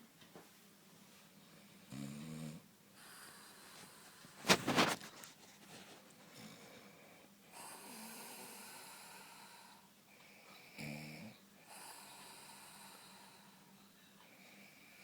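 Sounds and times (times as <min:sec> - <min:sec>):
woman snoring: 0:07.6 - 0:09.8.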